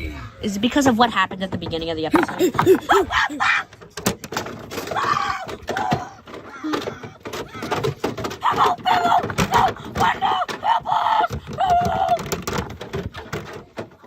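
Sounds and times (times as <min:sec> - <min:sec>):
excited voices: 0:02.1 - 0:03.8, 0:04.8 - 0:12.5.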